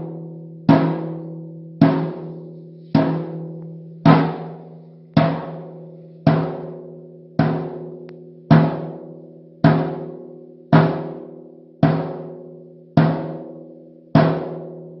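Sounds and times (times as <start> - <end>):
low-pitched drum hits: 3.0 - 4.6, 5.2 - 6.8.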